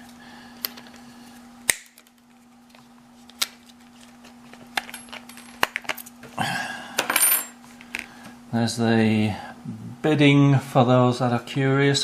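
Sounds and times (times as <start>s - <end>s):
faint steady hum: 0.0s - 12.0s
keys rattling: 4.7s - 6.1s.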